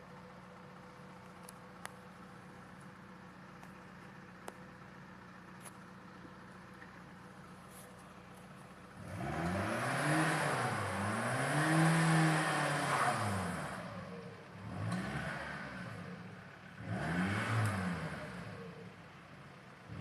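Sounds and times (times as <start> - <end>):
engine revving: 8.9 - 18.8.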